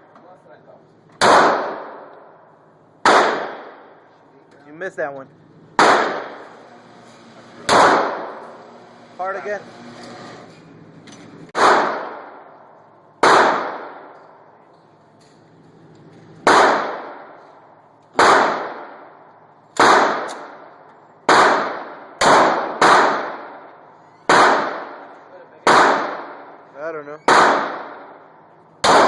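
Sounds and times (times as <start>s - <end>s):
pistol shots with echo: 1.2s - 2.4s, 3.0s - 4.0s, 5.8s - 6.5s, 7.7s - 8.5s, 11.5s - 14.6s, 16.4s - 29.0s.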